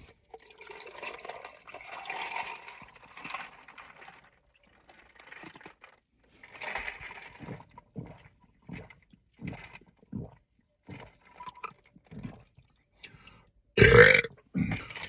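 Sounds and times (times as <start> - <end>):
wet chewing and smacking: 6.4 - 13.2.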